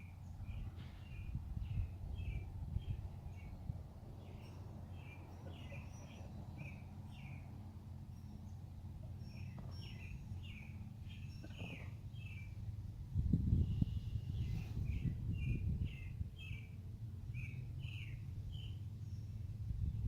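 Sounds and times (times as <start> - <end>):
steady low rumble: 0.0 - 20.0
small bird chirping: 9.2 - 12.6.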